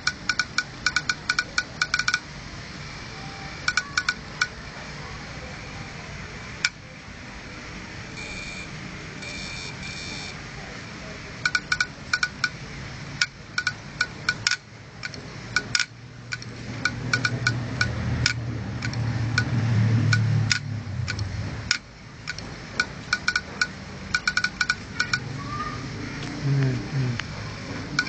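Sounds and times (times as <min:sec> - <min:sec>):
hard drive head clicking: 0:00.0 - 0:02.2, 0:13.2 - 0:19.5, 0:20.1 - 0:25.2
low motor hum: 0:15.1 - 0:24.2, 0:24.8 - 0:28.0.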